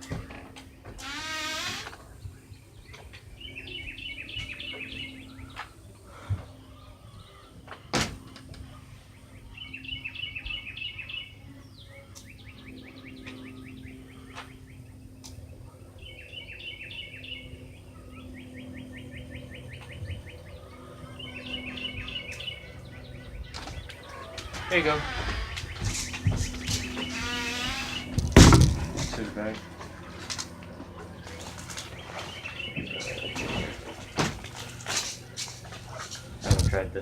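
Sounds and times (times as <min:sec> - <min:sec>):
steady low hum: 0:00.0 - 0:37.0
songbird trilling: 0:18.2 - 0:28.2.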